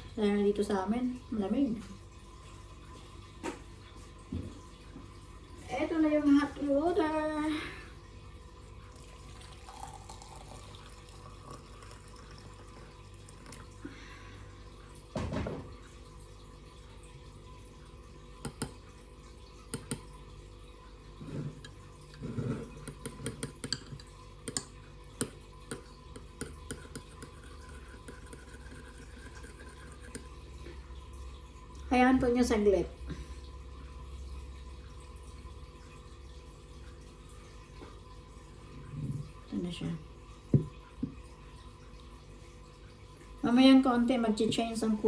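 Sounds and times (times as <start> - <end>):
small drips and clicks: 1.1 - 45.0
hot water pouring into cup: 7.4 - 45.0.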